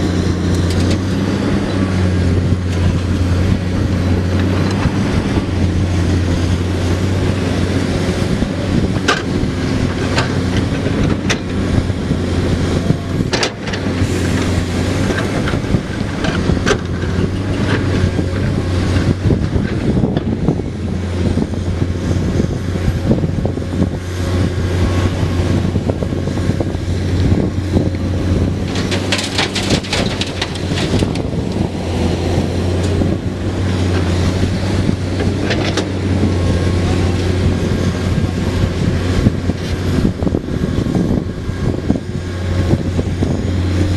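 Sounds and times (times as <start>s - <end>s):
excavator diesel engine running: 0.0s - 43.9s
gravel rattling into a truck: 27.5s - 36.2s.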